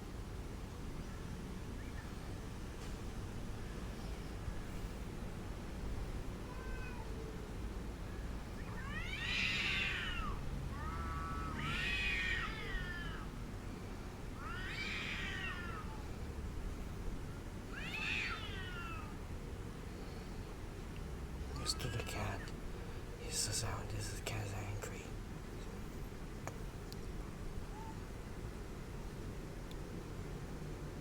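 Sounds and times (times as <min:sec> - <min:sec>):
cat yowling: 0:06.4 - 0:07.3, 0:08.6 - 0:13.3, 0:14.4 - 0:16.0, 0:17.7 - 0:19.2, 0:27.6 - 0:28.0.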